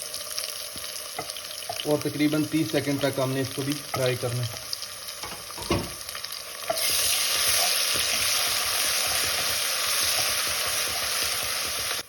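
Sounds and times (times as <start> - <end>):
paste sizzling in hot oil: 0.0 - 12.0
spoon scraping pan: 6.6 - 11.4.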